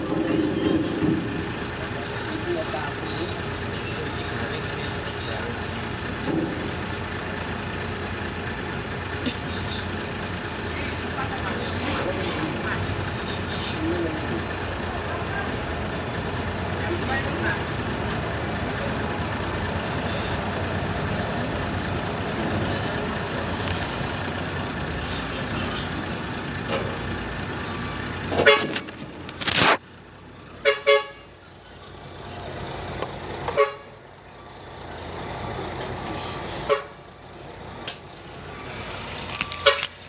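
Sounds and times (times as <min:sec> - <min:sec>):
vehicle engine running: 0:00.0 - 0:40.0
horn toots: 0:26.6 - 0:29.8, 0:30.6 - 0:31.4, 0:33.5 - 0:34.1, 0:36.6 - 0:37.1, 0:39.2 - 0:40.0.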